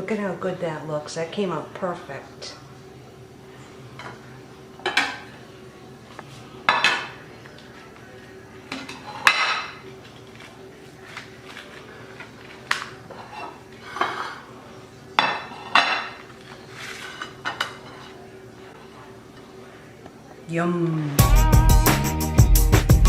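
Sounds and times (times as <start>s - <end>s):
utensils clinking on a plate: 4.8s - 5.3s, 6.6s - 7.9s, 8.7s - 14.5s, 15.2s - 19.5s.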